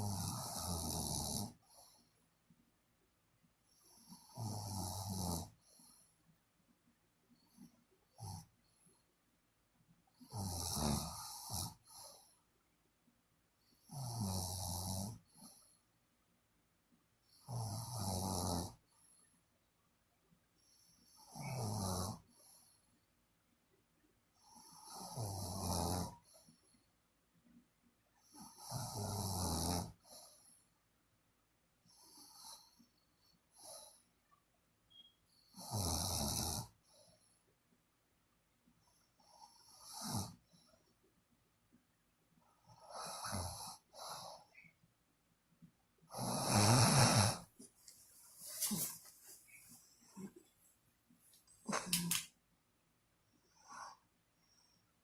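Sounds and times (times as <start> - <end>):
person snoring: 0.0 - 1.6, 13.9 - 15.2, 17.4 - 18.8, 21.2 - 22.2, 46.1 - 47.5
loud snore: 0.0 - 1.8, 4.1 - 5.6, 10.2 - 12.0, 13.9 - 15.2, 17.4 - 18.8, 21.2 - 22.2, 24.6 - 26.2, 28.4 - 30.0, 35.6 - 36.8, 39.6 - 40.4, 42.8 - 44.4, 46.1 - 47.5.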